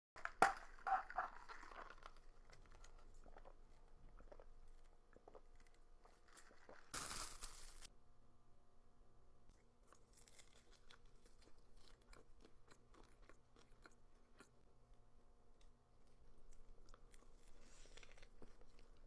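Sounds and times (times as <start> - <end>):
soft chewing crackles: 0.6 - 7.9, 9.4 - 19.0
crunchy fried chicken bite: 9.8 - 14.6.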